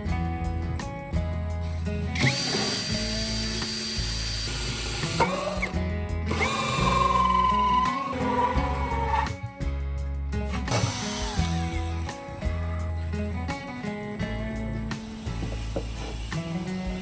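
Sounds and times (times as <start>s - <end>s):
background music: 0.0s - 17.0s
electric drill whine: 2.2s - 9.4s, 10.5s - 12.1s, 15.0s - 17.0s.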